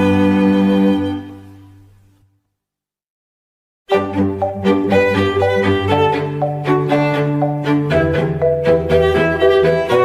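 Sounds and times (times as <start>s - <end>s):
held string chord: 3.9s - 10.0s.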